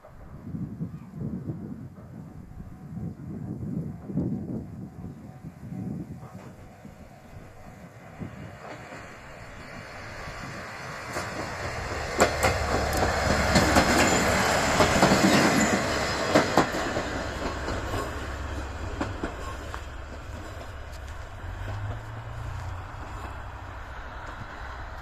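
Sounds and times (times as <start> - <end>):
train rumbling past: 0.0 - 25.0
wheels clacking over rail joints: 7.3 - 25.0.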